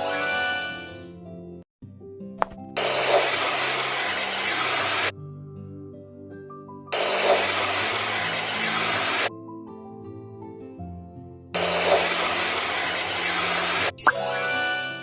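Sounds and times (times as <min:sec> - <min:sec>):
loud hissing: 0:02.8 - 0:05.1, 0:07.0 - 0:09.3, 0:11.6 - 0:13.9
light background music: 0:05.1 - 0:15.0.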